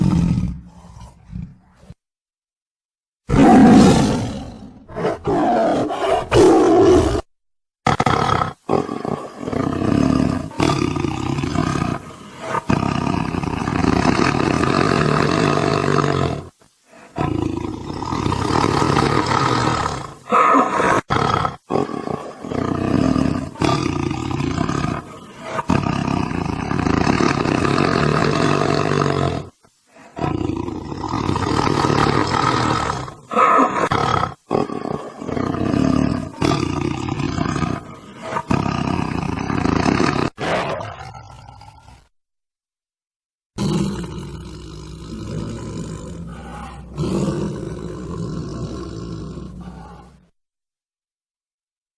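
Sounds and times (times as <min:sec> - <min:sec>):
tiger roaring: 0:00.0 - 0:02.0, 0:03.3 - 0:42.1, 0:43.6 - 0:50.3.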